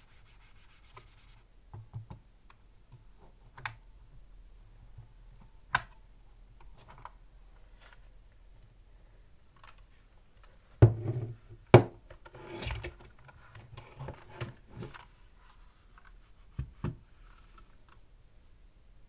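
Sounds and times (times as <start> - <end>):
objects rubbing on a desk: 0.0 - 1.4
objects knocking on a desk: 10.8 - 12.0.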